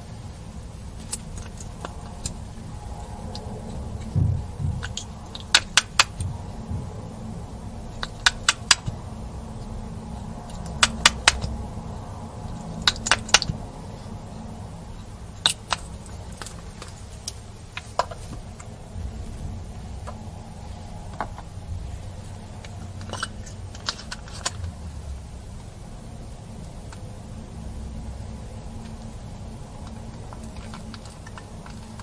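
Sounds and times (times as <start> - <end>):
low steady hum: 0.0 - 32.0.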